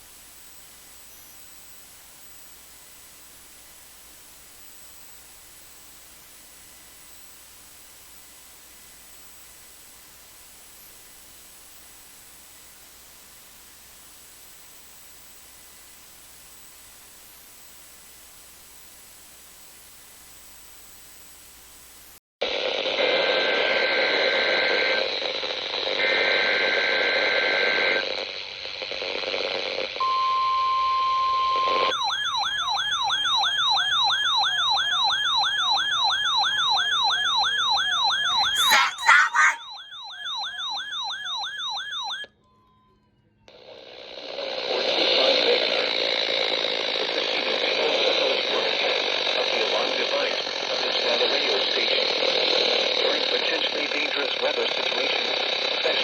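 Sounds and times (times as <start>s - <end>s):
radio static: 38.3s - 39.6s, 43.6s - 56.0s
warbling data tones: 38.3s - 39.7s
siren-like warbling alert tone: 38.3s - 39.8s
steady alert tone: 38.4s - 39.7s.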